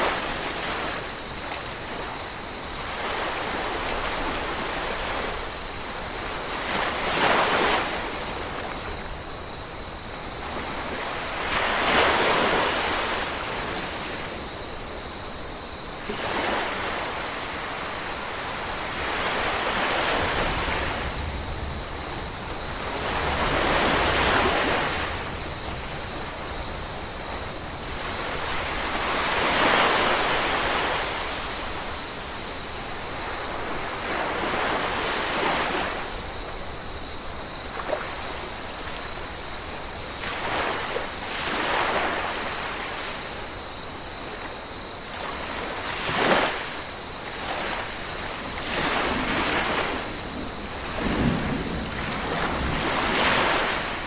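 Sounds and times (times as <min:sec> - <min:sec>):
ocean waves breaking: 0:16.0 - 0:36.5, 0:45.1 - 0:54.0.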